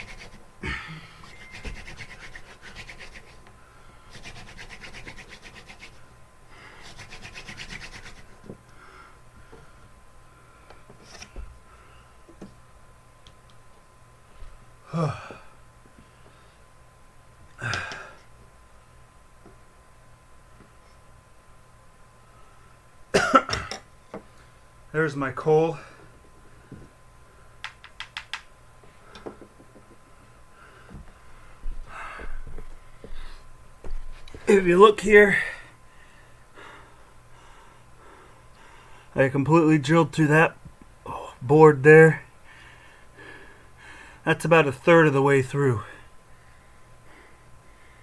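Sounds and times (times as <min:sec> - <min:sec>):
man sighing: 0:00.6 - 0:01.2, 0:14.9 - 0:15.6, 0:17.6 - 0:18.2.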